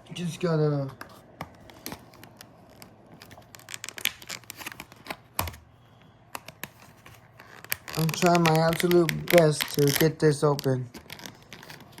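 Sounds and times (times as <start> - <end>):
packaging being handled: 1.0 - 5.7, 6.3 - 12.0.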